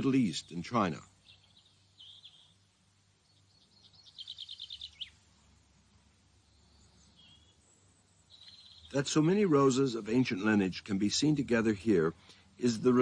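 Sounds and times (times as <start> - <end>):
bird chirps and trill: 0.0 - 5.2, 6.4 - 10.5.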